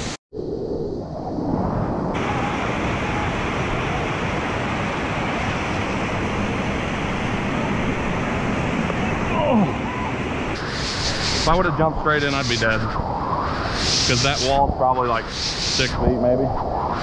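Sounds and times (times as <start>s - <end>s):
waterfall roaring: 2.2s - 12.9s.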